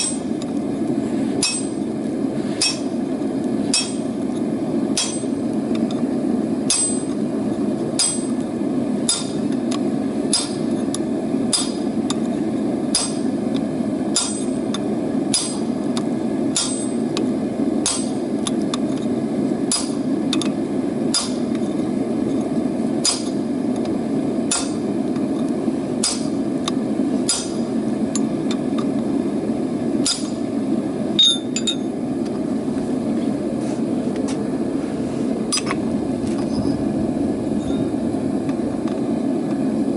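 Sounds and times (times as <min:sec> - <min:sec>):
hammer striking metal on anvil: 0:00.0 - 0:00.3, 0:01.4 - 0:01.8, 0:02.6 - 0:02.9, 0:03.7 - 0:04.1, 0:04.9 - 0:05.4, 0:06.7 - 0:07.1, 0:08.0 - 0:08.4, 0:09.0 - 0:09.4, 0:10.3 - 0:10.7, 0:11.5 - 0:11.9, 0:12.9 - 0:13.3, 0:14.1 - 0:14.6, 0:15.3 - 0:15.7, 0:16.5 - 0:17.0, 0:17.8 - 0:18.2, 0:19.7 - 0:20.0, 0:21.1 - 0:21.4, 0:23.0 - 0:23.4, 0:24.5 - 0:24.8, 0:26.0 - 0:26.4, 0:27.2 - 0:27.6, 0:30.0 - 0:30.4, 0:31.2 - 0:31.9
steady roar: 0:35.8 - 0:38.8.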